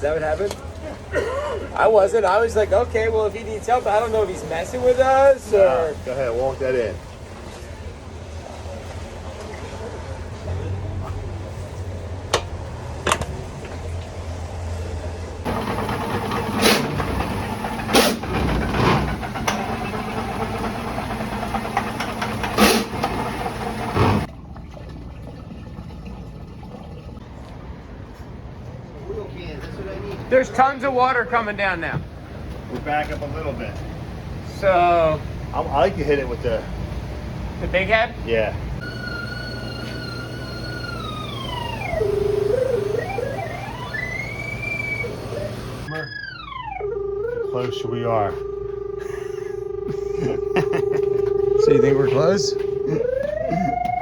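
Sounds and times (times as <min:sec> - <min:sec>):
drain jetter running: 0:15.4 - 0:27.2, 0:38.8 - 0:45.9, 0:49.7 - 0:54.0
electronic whistling tone: 0:38.8 - 0:49.0, 0:51.3 - 0:54.0
steady low hum: 0:46.8 - 0:54.0.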